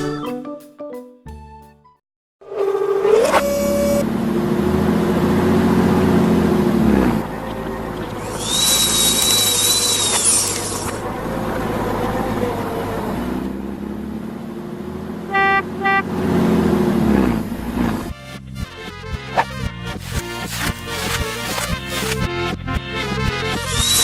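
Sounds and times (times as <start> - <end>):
engine revving: 2.5 - 18.2
horn beeps: 3.2 - 4.0, 15.3 - 16.2
loud hiss with whistling tone: 8.4 - 10.8.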